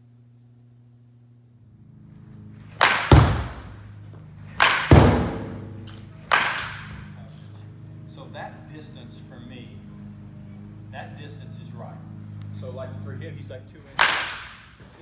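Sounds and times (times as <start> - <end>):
baseball bat cracking: 2.6 - 7.3, 13.7 - 15.0
ball landing thud: 2.7 - 7.2, 13.9 - 15.0.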